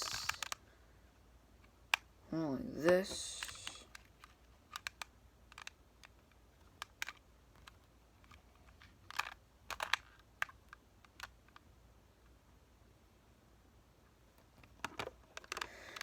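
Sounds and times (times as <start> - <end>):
puzzle cube clicking as twisted: 0.0 - 0.6, 2.7 - 11.6, 14.6 - 16.0.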